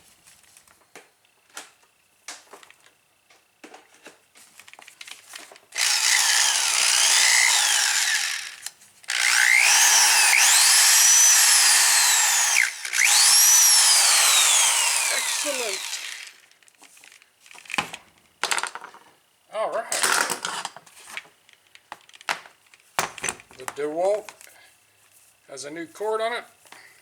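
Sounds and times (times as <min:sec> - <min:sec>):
electric drill motor whining: 0:05.8 - 0:16.5.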